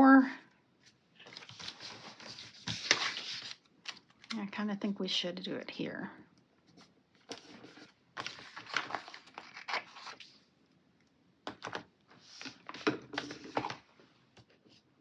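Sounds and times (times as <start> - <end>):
paper rustling and crinkling: 0.9 - 4.4, 6.7 - 10.4, 12.2 - 13.9.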